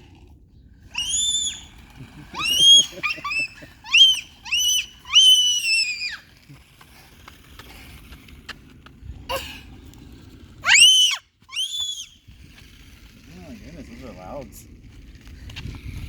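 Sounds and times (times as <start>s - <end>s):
young child squealing: 0.9s - 1.7s, 2.4s - 6.3s, 10.6s - 12.2s.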